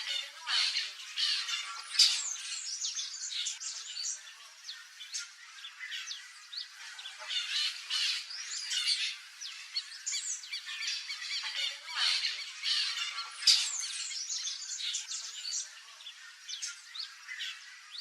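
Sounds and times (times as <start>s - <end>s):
parrots squawking and chirping: 0.0s - 2.5s, 6.8s - 9.2s, 10.5s - 14.2s.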